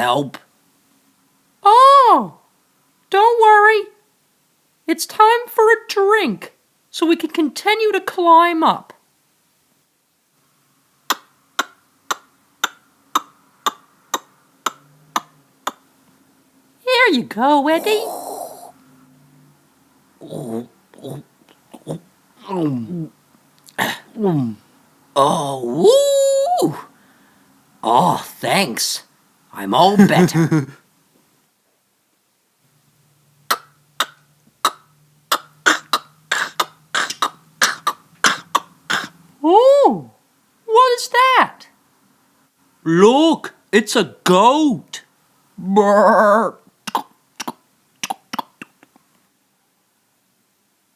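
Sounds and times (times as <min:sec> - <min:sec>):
regular sharp ticks: 0:11.1 - 0:15.8, 0:33.5 - 0:39.1, 0:46.8 - 0:49.1
tongue clicks: 0:11.1 - 0:15.8, 0:33.5 - 0:39.2, 0:46.8 - 0:49.1.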